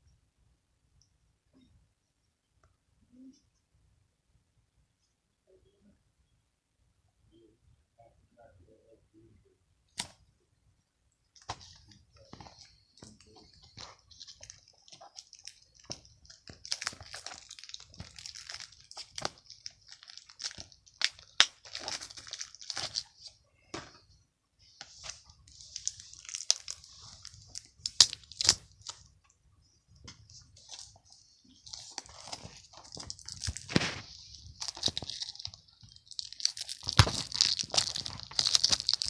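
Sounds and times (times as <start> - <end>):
plastic wrap crinkling: 11.4 - 23.4, 24.7 - 29.1, 30.1 - 39.0.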